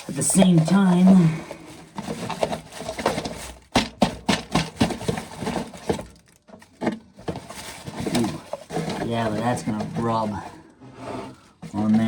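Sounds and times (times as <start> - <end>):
corn kernels and cob rattling: 0.0 - 10.5.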